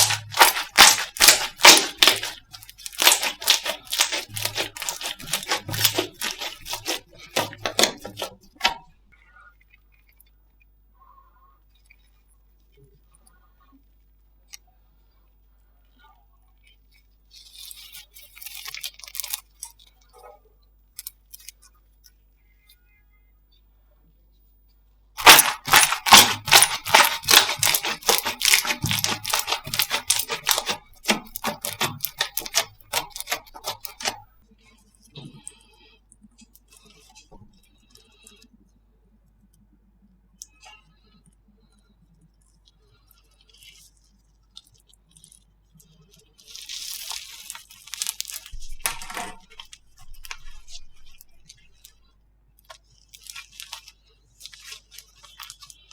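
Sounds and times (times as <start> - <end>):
slime crackling and popping: 0.0 - 8.9, 17.4 - 20.0, 25.2 - 34.4, 44.5 - 52.0, 53.0 - 55.9.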